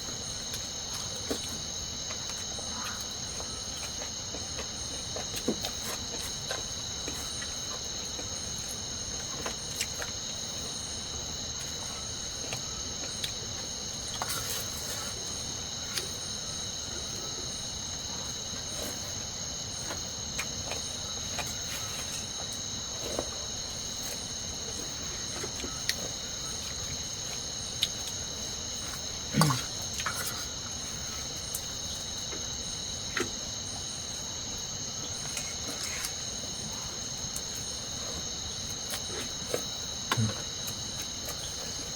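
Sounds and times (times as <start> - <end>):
crickets chirping: 0.0 - 41.9.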